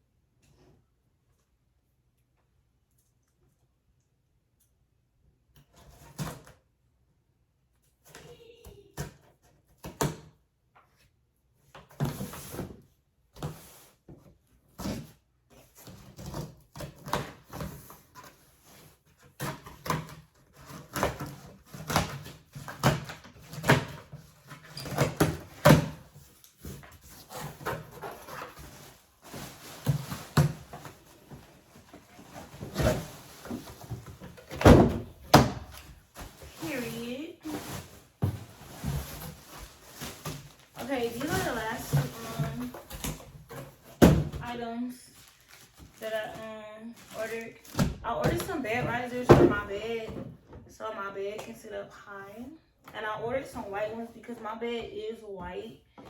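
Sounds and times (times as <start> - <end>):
cardboard packaging rustling: 14.7 - 49.7.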